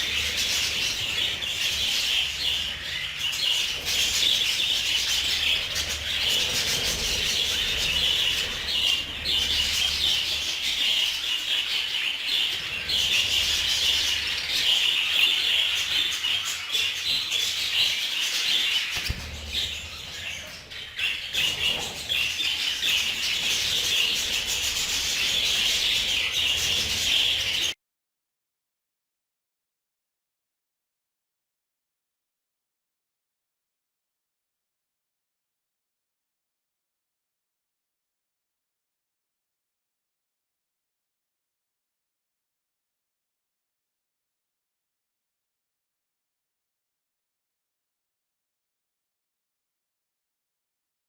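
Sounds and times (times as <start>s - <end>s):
budgerigars chattering and warbling: 0.0s - 27.8s.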